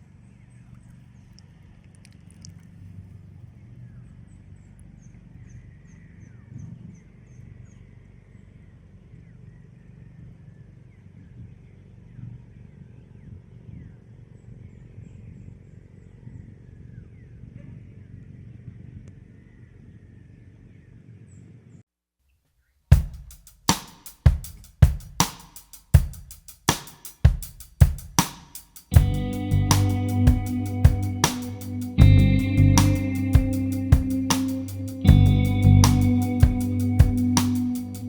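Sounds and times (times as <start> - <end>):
background music with drum beat: 22.9 - 38.0
low outdoor rumble: 29.0 - 38.0.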